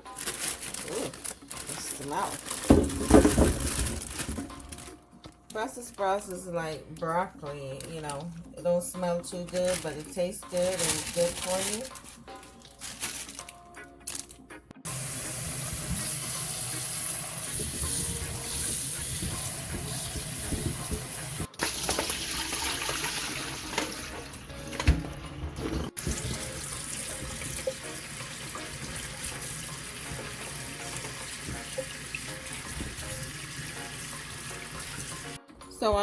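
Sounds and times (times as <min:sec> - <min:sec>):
tap running into sink: 0:15.4 - 0:27.8.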